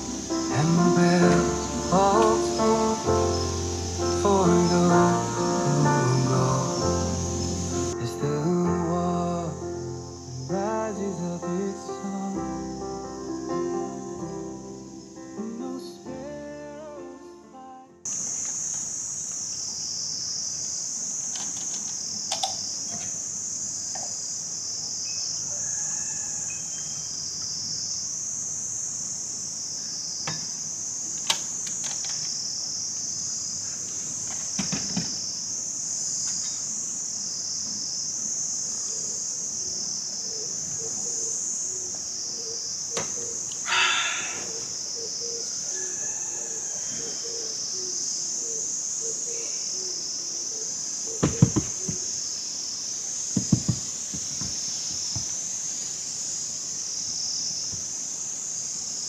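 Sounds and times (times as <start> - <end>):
insects droning: 0.0 - 59.0
short call: 43.6 - 44.7.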